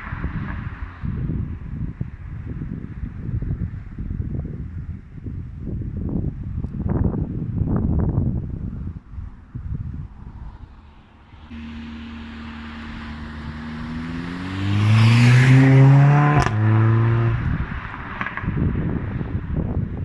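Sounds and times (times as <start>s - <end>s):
car engine accelerating hard: 11.3s - 19.2s
sharp exhaust crack: 11.5s - 17.6s.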